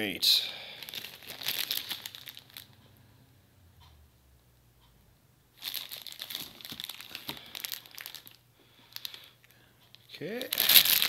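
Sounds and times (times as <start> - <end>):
packaging wrap crinkling: 0.7 - 2.8, 5.6 - 11.0.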